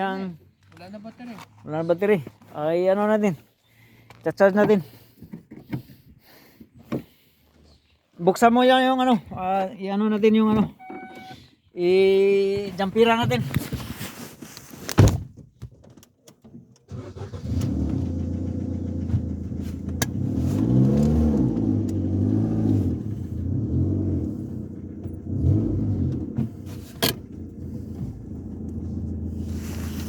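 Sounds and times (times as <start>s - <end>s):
car engine revving: 17.0s - 30.0s.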